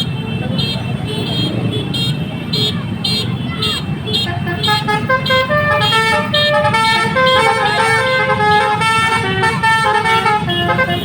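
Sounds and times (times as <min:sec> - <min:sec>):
multi-tone bus horn tune: 0:00.0 - 0:11.0.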